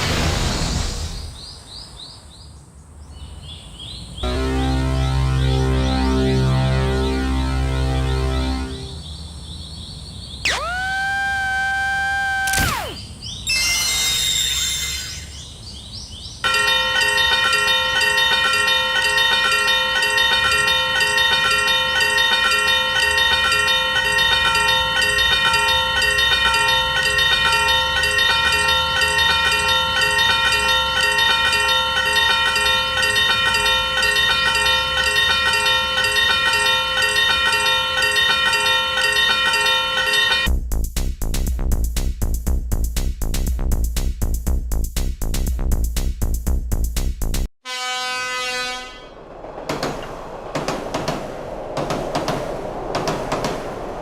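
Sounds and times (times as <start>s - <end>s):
level crossing warning bell: 16.4s - 40.5s.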